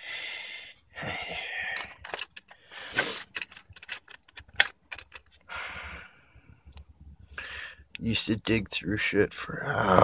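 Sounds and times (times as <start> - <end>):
washers and bolts clinking: 1.8 - 5.4.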